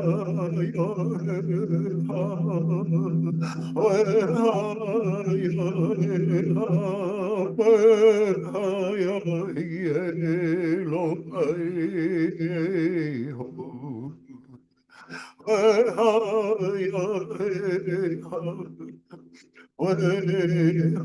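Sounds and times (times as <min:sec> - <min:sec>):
low held drone: 0:00.0 - 0:07.2
person singing with vibrato: 0:00.0 - 0:21.0.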